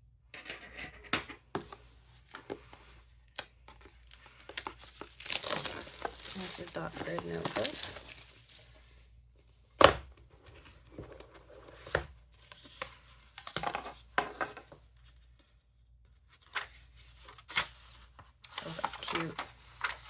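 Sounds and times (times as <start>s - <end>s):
packaging rustling and tearing: 3.3s - 8.8s, 16.7s - 20.0s.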